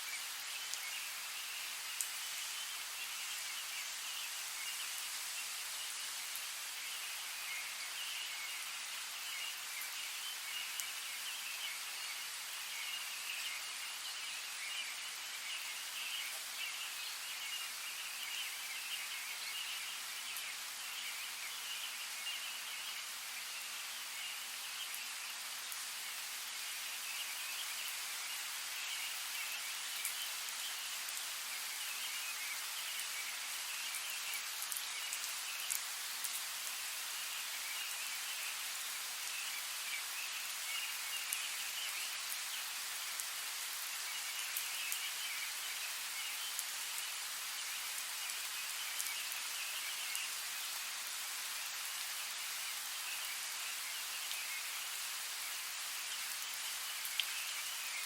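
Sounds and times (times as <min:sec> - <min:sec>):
rain drops ticking: 0:00.0 - 0:58.0
steady rainfall: 0:00.0 - 0:58.0.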